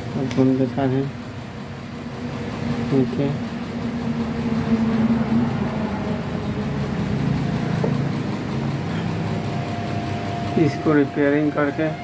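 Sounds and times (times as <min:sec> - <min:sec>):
amplifier speaker low drone: 0:02.8 - 0:12.0.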